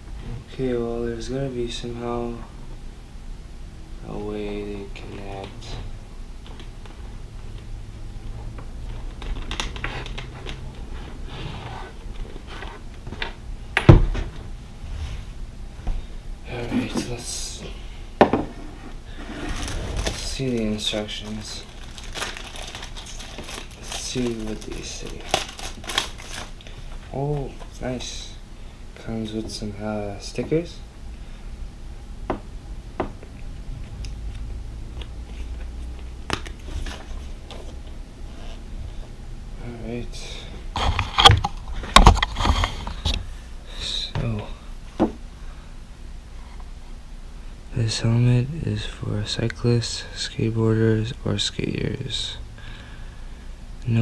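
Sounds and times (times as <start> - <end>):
paper rustling and crinkling: 19.5 - 27.6.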